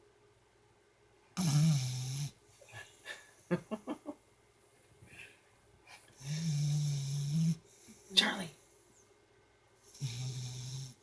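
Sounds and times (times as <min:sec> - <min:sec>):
puppy snoring: 0:01.4 - 0:02.4, 0:06.1 - 0:08.0, 0:09.8 - 0:11.0.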